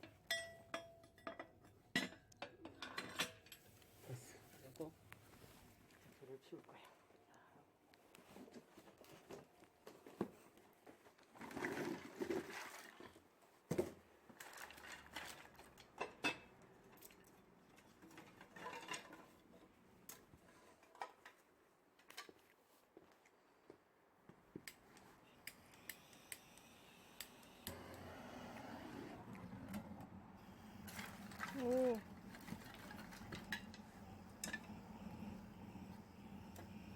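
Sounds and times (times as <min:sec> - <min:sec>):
metallic clinks from stove handling: 0:00.0 - 0:03.6.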